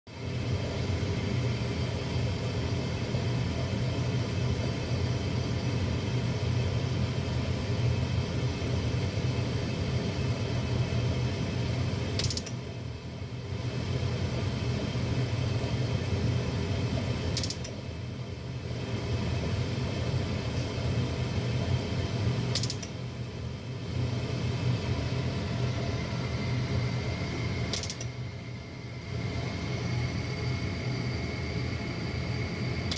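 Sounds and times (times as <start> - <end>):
furnace motor humming and rattling: 0.1 - 32.9
sharp click: 12.2 - 12.6, 17.4 - 17.8, 22.5 - 23.0, 27.7 - 28.1.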